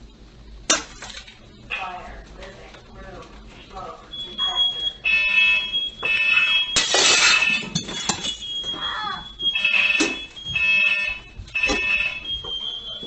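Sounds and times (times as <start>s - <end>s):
smoke alarm beeping: 3.8s - 13.0s.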